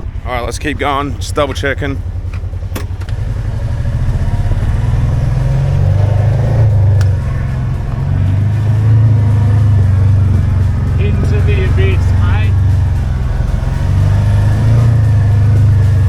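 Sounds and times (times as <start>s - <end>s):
car engine running under load: 0.0s - 16.0s.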